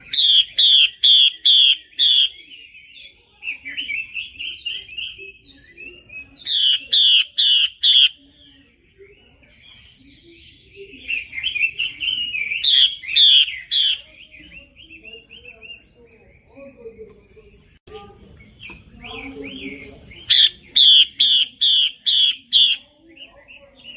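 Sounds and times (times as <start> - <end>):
bird warbling: 0.0 - 8.4, 11.1 - 15.9, 18.6 - 23.9.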